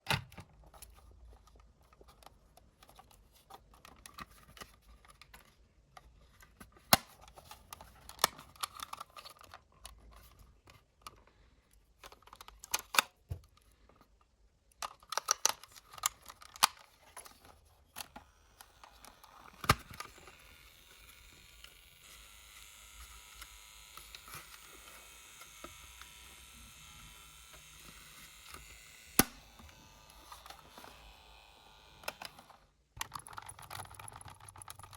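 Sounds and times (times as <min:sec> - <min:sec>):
faint steady whir: 0:18.0 - 0:33.0.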